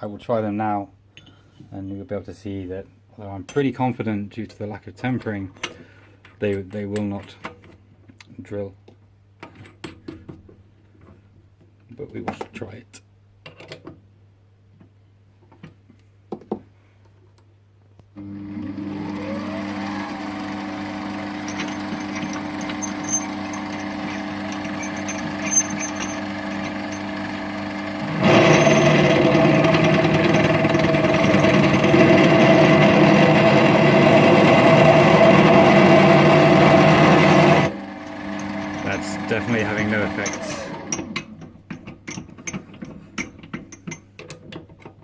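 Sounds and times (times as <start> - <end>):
lathe motor running: 18.2 - 40.9
drill bit grinding on metal: 18.2 - 41.1.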